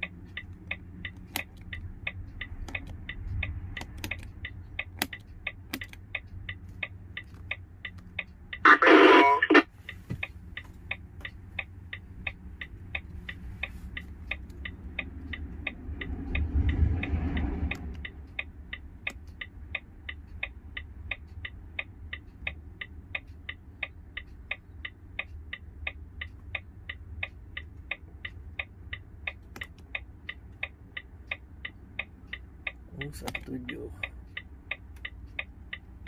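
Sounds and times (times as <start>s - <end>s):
steady even ticking: 0.0s - 36.0s
low rumble: 14.2s - 21.2s.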